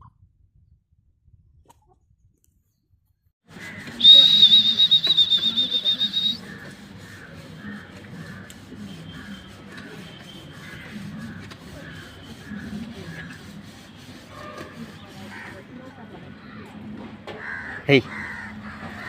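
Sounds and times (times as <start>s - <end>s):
high-pitched whistle: 4.0s - 6.4s.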